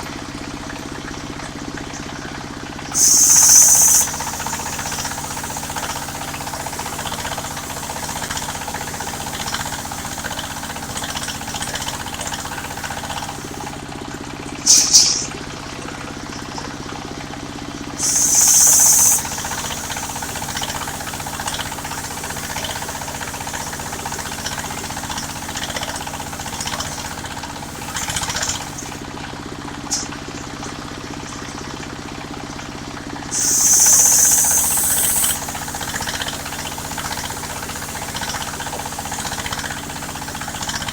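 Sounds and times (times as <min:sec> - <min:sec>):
circular saw cutting wood: 0:02.9 - 0:13.8, 0:18.0 - 0:29.0, 0:33.3 - 0:40.9
sawmill engine running: 0:02.9 - 0:14.0, 0:18.0 - 0:29.1, 0:33.2 - 0:40.9.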